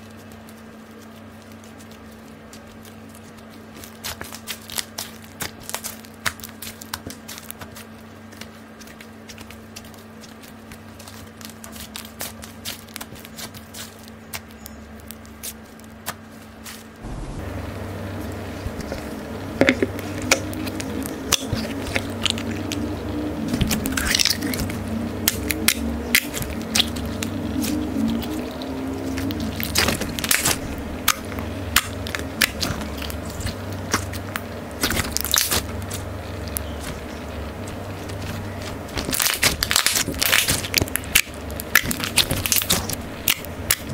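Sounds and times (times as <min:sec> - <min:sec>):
slime crackling and popping: 0:00.0 - 0:43.9
steady low hum: 0:00.0 - 0:43.9
steady hiss: 0:17.0 - 0:20.2.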